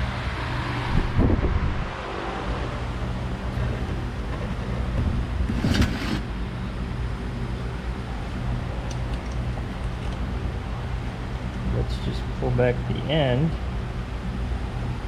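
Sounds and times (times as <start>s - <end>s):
low machine hum: 0.0s - 15.0s.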